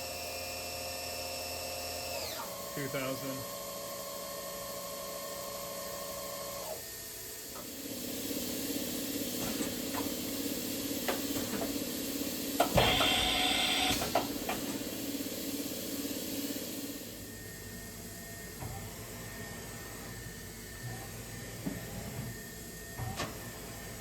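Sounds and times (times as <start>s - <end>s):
machine spindle whining: 2.0s - 6.9s, 12.6s - 15.0s.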